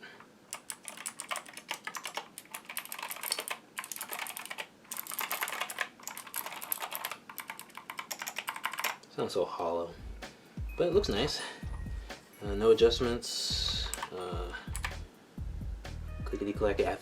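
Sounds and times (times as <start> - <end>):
clicky mechanical keyboard typing: 0.5 - 9.0, 13.7 - 15.0.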